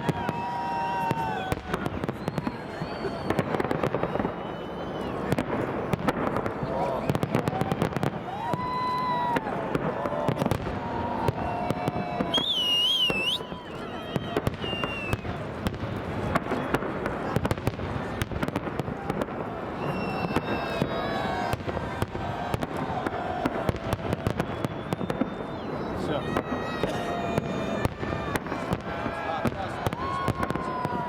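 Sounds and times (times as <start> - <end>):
fireworks bangs and crackles: 0.0 - 31.0
people's voices: 4.6 - 31.0.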